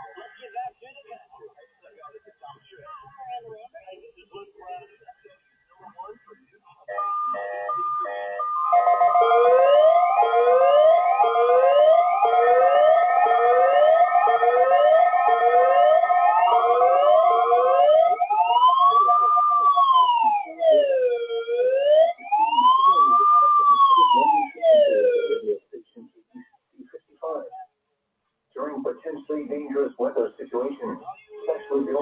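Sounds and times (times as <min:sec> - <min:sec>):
electronic siren whooping and wailing: 0:06.9 - 0:25.4.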